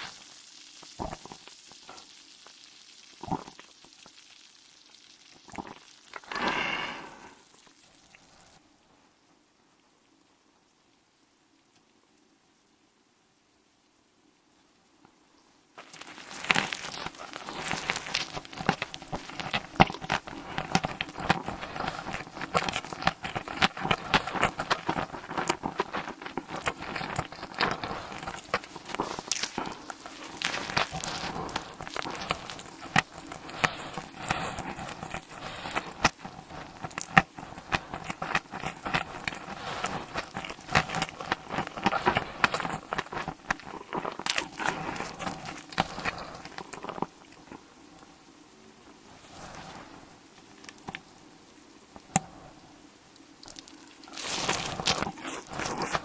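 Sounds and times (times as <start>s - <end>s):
crackly chewing and biting: 0.0s - 8.6s, 15.8s - 48.1s, 53.2s - 56.0s.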